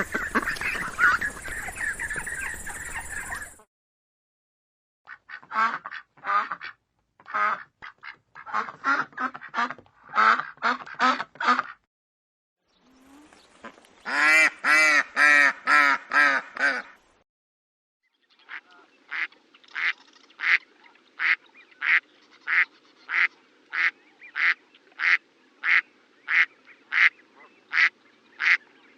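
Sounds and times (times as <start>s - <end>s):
duck quacking: 0.0s - 3.6s, 5.1s - 11.8s, 13.1s - 17.0s, 18.5s - 28.6s.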